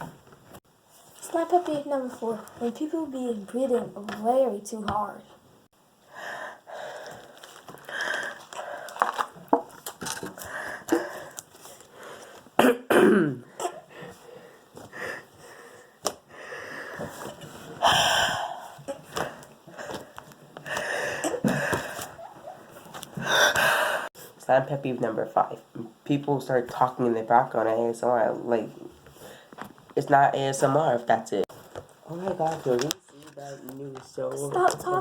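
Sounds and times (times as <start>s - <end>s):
person breathing hard: 6.1s - 9.2s, 10.4s - 12.5s, 13.4s - 22.2s, 23.2s - 24.1s.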